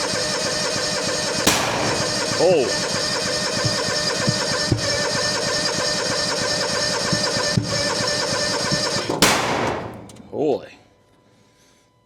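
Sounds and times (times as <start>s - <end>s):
engine running unevenly: 0.0s - 10.2s
engine pops: 1.5s - 5.6s, 6.9s - 10.4s.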